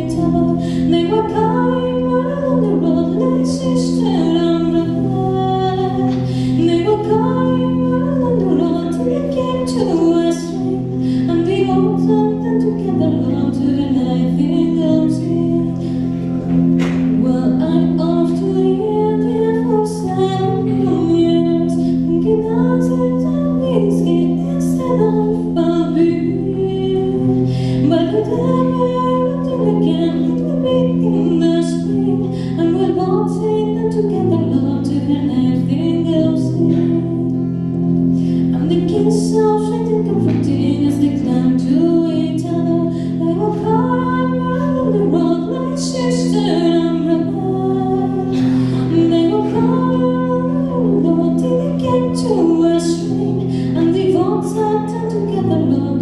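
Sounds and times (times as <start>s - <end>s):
sustained accompaniment chords: 0.0s - 56.0s
woman singing a slow ballad: 0.0s - 56.0s.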